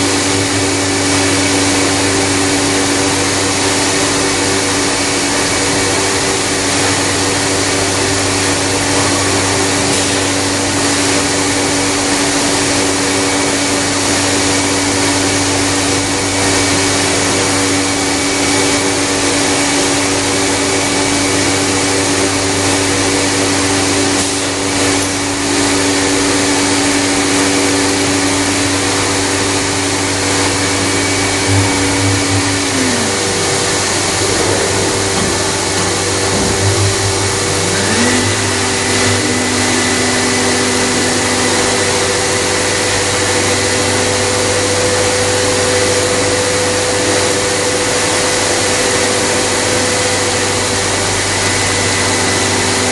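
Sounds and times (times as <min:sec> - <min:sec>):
machining centre whine: 0:00.0 - 0:52.9
loud rushing noise: 0:30.5 - 0:43.4.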